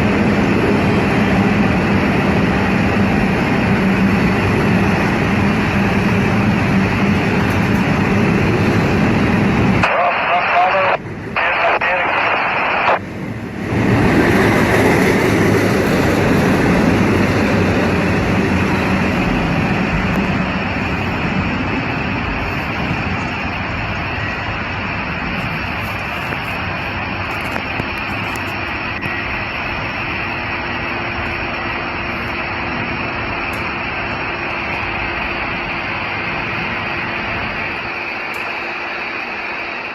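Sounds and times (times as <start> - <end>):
freight train rolling past: 0.0 - 9.8, 13.0 - 39.9.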